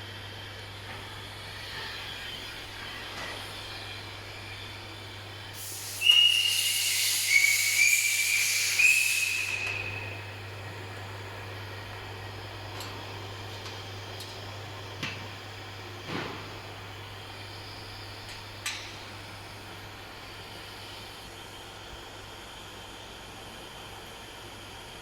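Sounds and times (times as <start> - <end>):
compressed air hissing: 5.5 - 10.6.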